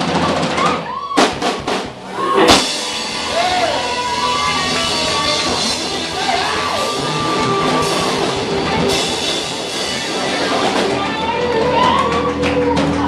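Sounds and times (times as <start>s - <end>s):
drum kit: 0.0s - 13.0s
electric guitar: 0.0s - 13.0s
rock band playing loud: 0.0s - 13.0s.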